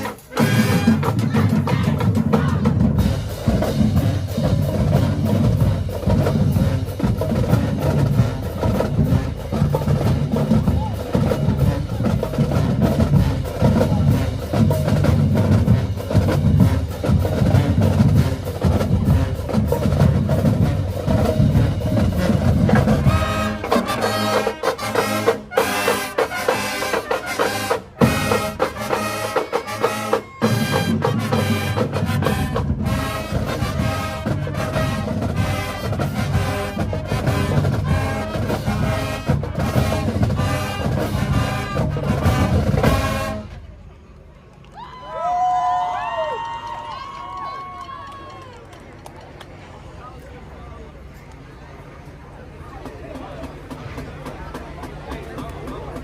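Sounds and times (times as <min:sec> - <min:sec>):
bass drums: 0:00.0 - 0:24.4, 0:30.5 - 0:43.4
brass section playing: 0:00.0 - 0:43.7
marching band playing: 0:00.0 - 0:44.1, 0:52.8 - 0:56.0.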